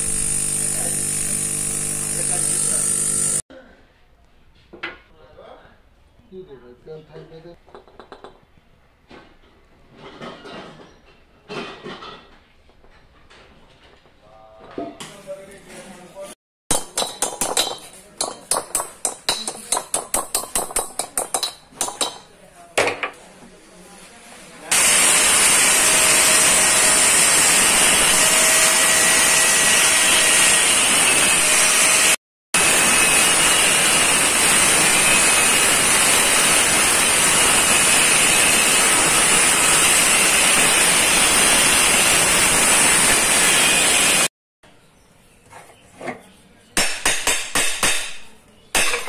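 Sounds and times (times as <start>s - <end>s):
loud steady hissing: 0.0s - 3.4s.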